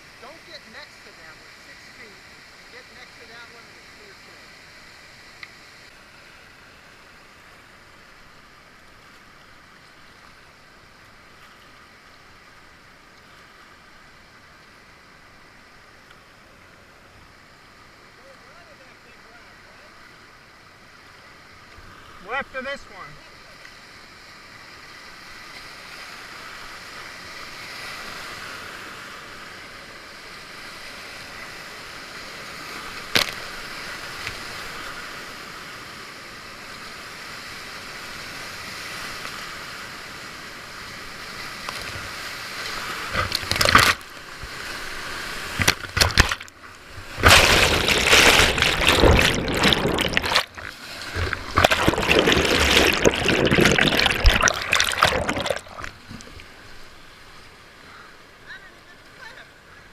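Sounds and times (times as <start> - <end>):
waves splashing over kayak: 24.7 - 59.8
whitewater rapids rushing: 47.2 - 56.0.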